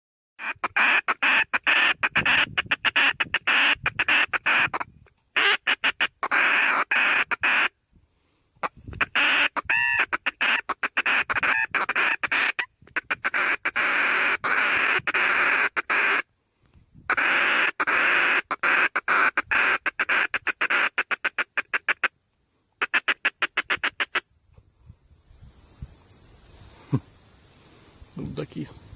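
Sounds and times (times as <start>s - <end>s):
ducks squawking and quacking: 0.4s - 7.7s, 8.9s - 16.2s, 17.1s - 22.1s.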